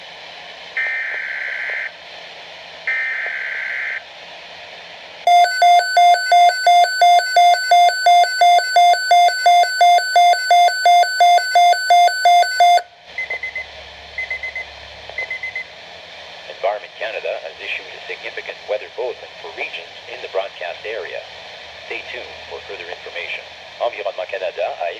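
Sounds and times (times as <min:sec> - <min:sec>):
radio alarm beeps: 0:00.8 - 0:01.9, 0:05.3 - 0:15.7.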